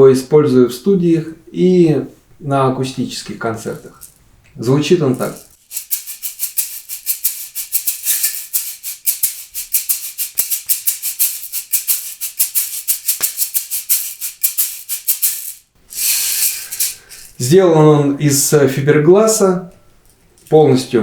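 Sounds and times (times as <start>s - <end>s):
continuous hiss: 0.0s - 21.0s
shaker rhythm: 3.7s - 4.2s, 5.0s - 17.5s.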